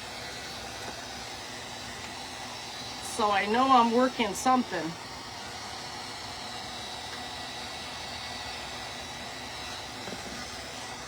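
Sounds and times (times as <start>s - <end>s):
hot-air blower humming: 0.0s - 11.0s.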